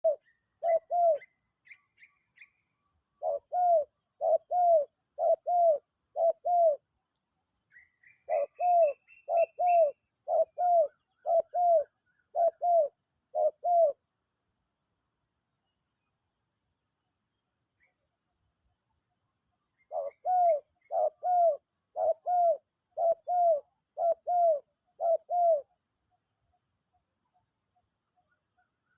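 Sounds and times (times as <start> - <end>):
dove cooing: 0.0 - 1.4, 3.1 - 6.9, 8.1 - 14.0, 19.8 - 25.8
small bird chirping: 0.0 - 13.8.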